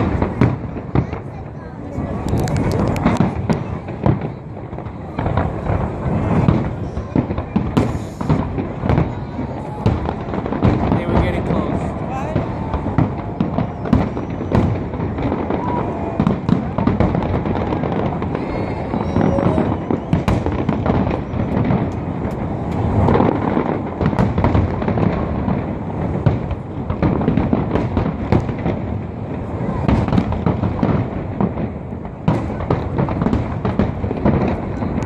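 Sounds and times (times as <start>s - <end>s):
sharp crackling reports: 0.0s - 24.0s
fireworks shell bursts booming: 2.2s - 35.0s
whistling firework shells: 11.8s - 24.6s.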